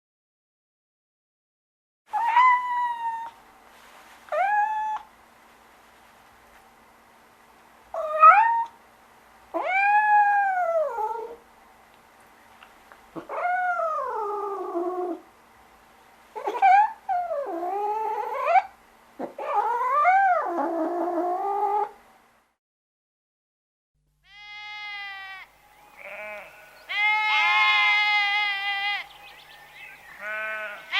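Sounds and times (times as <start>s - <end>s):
animal meow-like calls: 2.1s - 3.4s, 24.3s - 30.9s.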